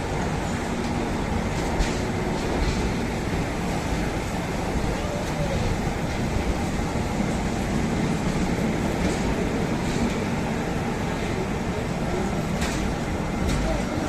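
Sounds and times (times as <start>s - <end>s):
train rumbling on rails: 0.0s - 14.0s
faint rail clicks: 0.4s - 4.4s, 12.2s - 14.0s.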